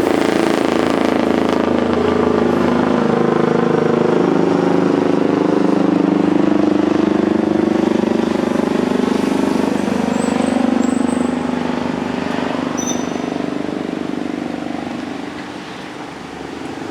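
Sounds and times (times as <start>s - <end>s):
throbbing engine drone: 0.0s - 16.9s.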